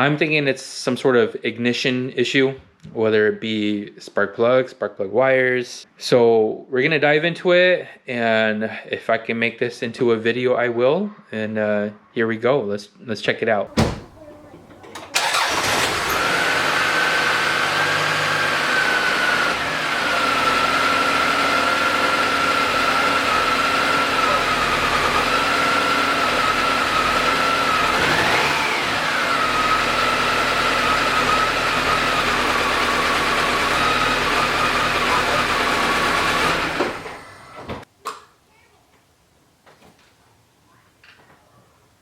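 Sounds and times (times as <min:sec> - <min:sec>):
car engine idling roughly: 0:14.0 - 0:28.0, 0:28.8 - 0:37.7.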